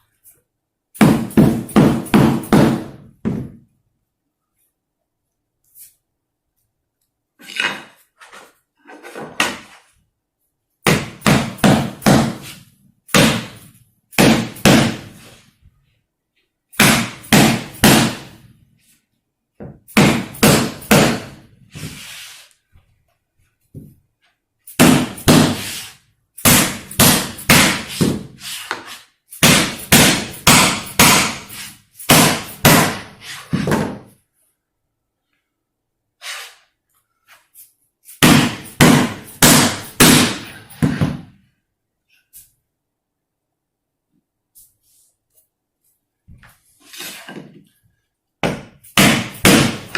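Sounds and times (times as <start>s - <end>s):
hammer striking wooden plank: 1.0s - 3.6s, 10.8s - 13.6s, 14.2s - 15.2s, 16.8s - 18.4s, 19.6s - 21.5s, 24.8s - 25.8s, 26.4s - 28.8s, 29.4s - 34.1s, 38.2s - 41.3s, 48.4s - 49.9s.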